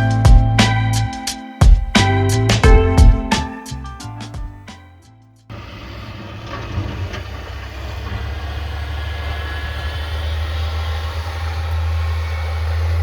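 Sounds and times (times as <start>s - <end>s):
snowplow truck engine droning: 5.5s - 13.0s.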